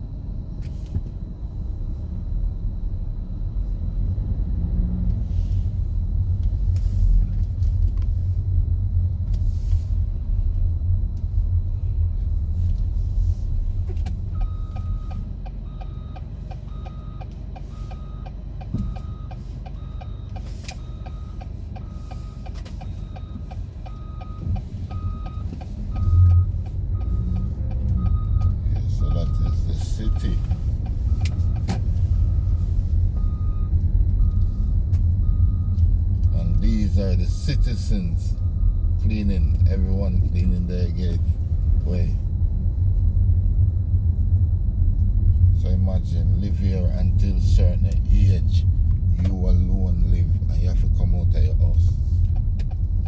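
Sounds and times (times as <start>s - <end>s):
backup alarm beeping: 14.2s - 42.4s.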